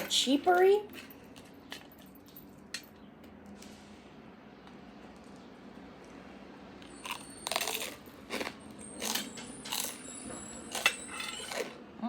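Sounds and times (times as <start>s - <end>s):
crunching and sucking bites: 6.9s - 10.0s.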